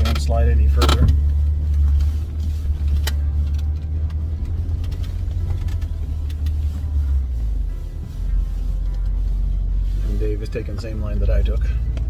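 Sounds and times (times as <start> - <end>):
vehicle engine low rumble: 0.0 - 12.0.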